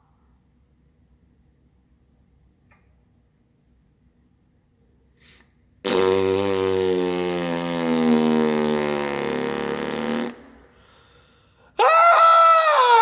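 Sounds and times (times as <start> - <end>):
long fart noise: 5.8 - 10.8.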